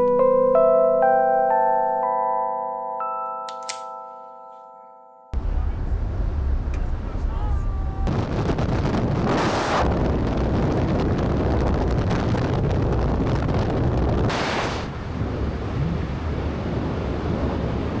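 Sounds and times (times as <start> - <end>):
deep rumble: 5.4 - 18.0
wind buffeting microphone: 8.0 - 18.0
hissy surges: 14.2 - 14.9.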